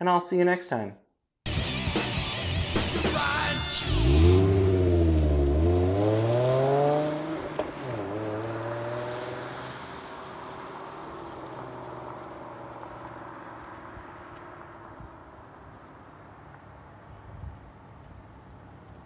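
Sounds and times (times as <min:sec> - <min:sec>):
car engine revving and idling: 0:01.5 - 0:16.6.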